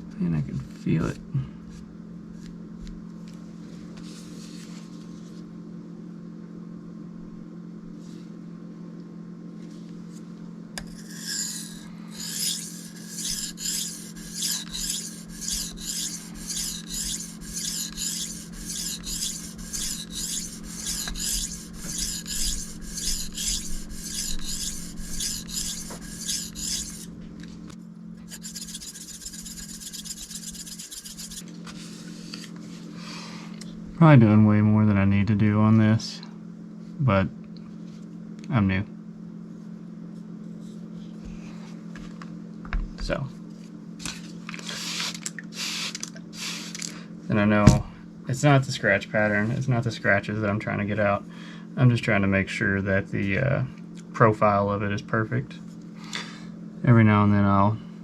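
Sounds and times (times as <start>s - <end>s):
low steady hum: 0.0s - 58.0s
knife scraping on sharpening stone: 10.8s - 27.1s, 28.3s - 31.4s.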